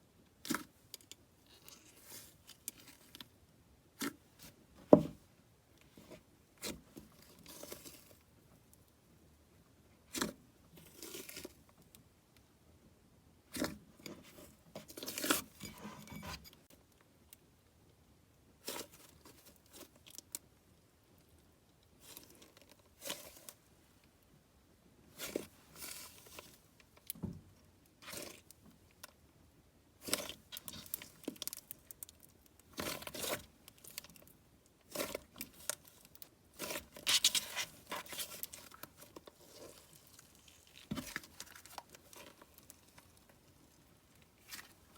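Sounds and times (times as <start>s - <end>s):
hands squishing slime: 34.8s - 44.9s.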